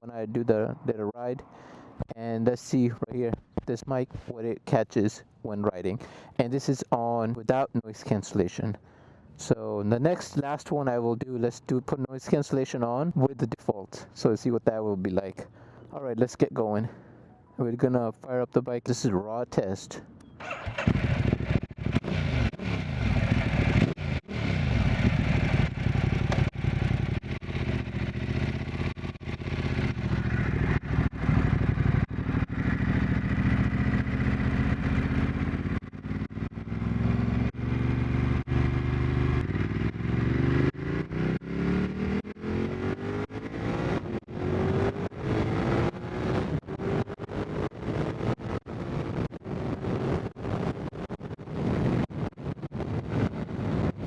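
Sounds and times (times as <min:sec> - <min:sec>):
motorcycle engine accelerating: 0:20.4 - 0:54.0.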